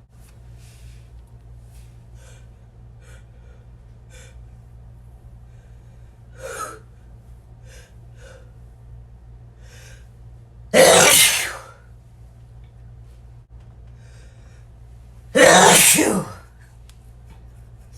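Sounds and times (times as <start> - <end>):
person sniffing: 10.8 - 11.7
person sneezing: 10.8 - 11.8, 15.4 - 16.5.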